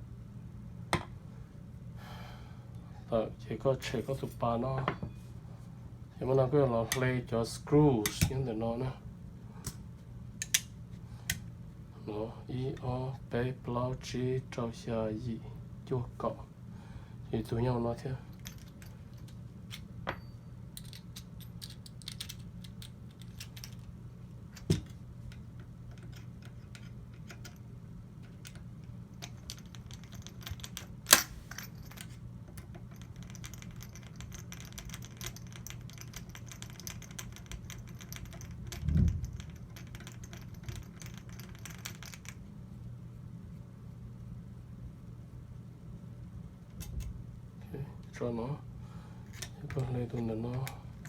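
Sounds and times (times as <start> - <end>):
metal parts clicking and clinking: 18.3 - 23.9, 24.5 - 27.6, 29.2 - 42.4
low hum: 37.7 - 51.0.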